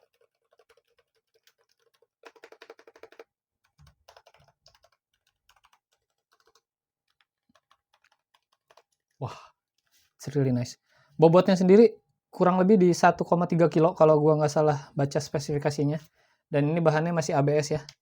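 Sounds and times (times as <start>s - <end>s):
mechanical keyboard typing: 0.0s - 9.0s.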